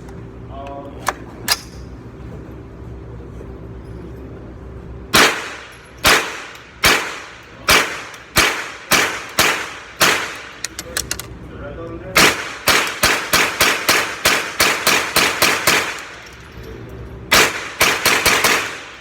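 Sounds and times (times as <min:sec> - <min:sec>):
steady low hum: 0:00.0 - 0:19.0
rifle shots echoing: 0:05.2 - 0:10.7, 0:12.2 - 0:16.2, 0:17.3 - 0:19.0.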